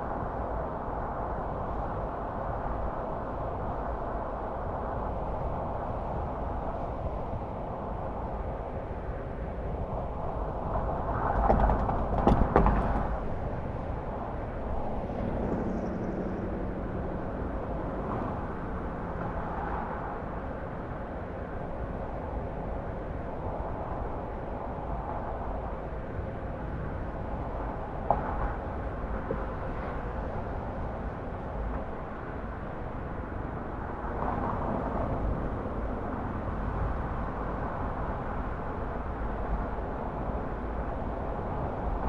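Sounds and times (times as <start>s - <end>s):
knocks: 11.4s - 13.3s
car driving at speed: 14.0s - 21.0s.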